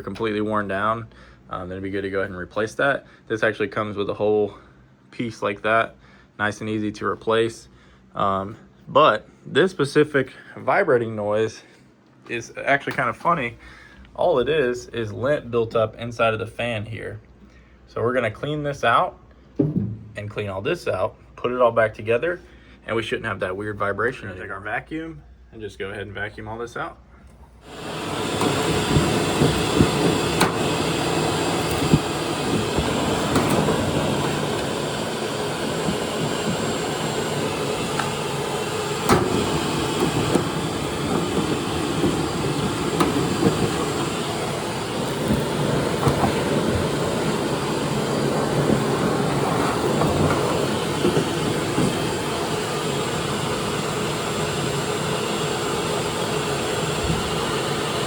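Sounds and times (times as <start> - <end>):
vacuum cleaner running: 27.6 - 58.0
clicks and knocks: 28.1 - 36.8, 39.0 - 52.2.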